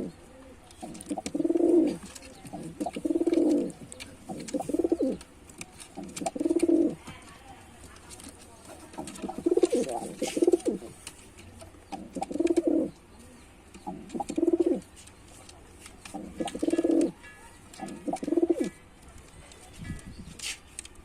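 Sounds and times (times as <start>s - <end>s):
pigeon cooing: 0.0s - 5.2s, 5.9s - 7.0s, 8.9s - 10.9s, 11.9s - 13.0s, 13.8s - 14.9s, 16.1s - 17.2s, 17.8s - 18.8s.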